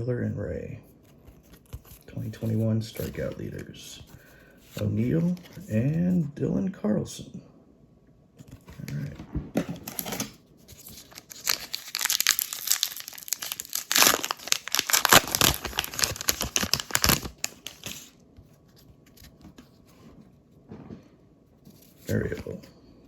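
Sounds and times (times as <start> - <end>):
wrapper tearing and crinkling: 9.8 - 18.2.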